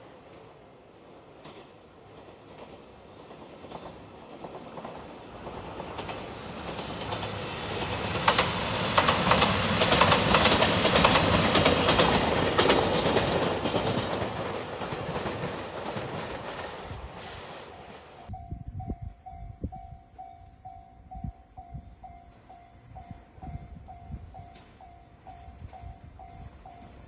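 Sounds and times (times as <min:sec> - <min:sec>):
diesel train passing at speed: 0:00.0 - 0:27.0
wheels clicking over rail joints: 0:01.4 - 0:18.0.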